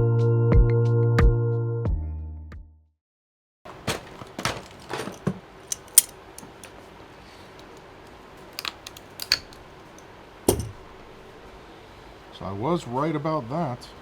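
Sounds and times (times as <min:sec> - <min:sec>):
low room hum: 0:03.7 - 0:14.0
plastic and metal parts clicking: 0:08.6 - 0:09.6.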